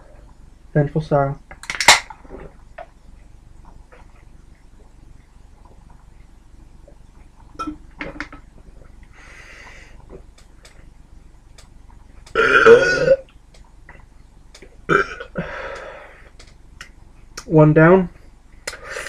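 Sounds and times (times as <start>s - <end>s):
soft breath: 9.1s - 10.0s, 15.4s - 16.4s
man burping loudly: 12.4s - 13.2s, 14.9s - 15.5s.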